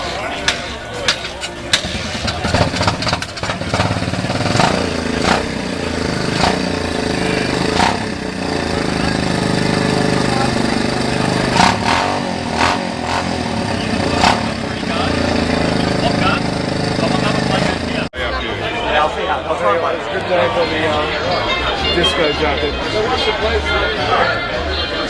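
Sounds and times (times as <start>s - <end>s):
motorcycle engine running: 1.4s - 18.1s.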